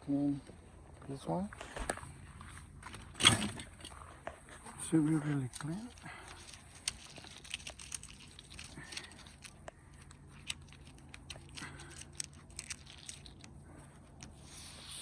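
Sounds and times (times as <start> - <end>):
small clicks and handling noises: 5.2 - 14.4.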